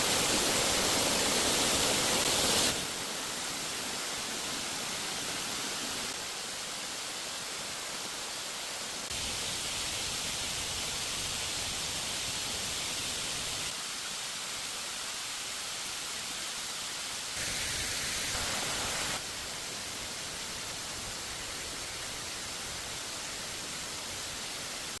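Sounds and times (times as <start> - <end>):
waterfall rushing: 0.0 - 13.8, 17.4 - 19.3.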